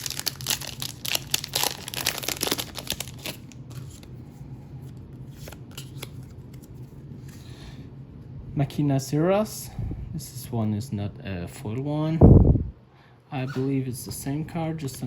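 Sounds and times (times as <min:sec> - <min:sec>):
wrapper tearing and crinkling: 0:00.0 - 0:04.1
cards being handled: 0:01.4 - 0:04.2, 0:04.8 - 0:07.5.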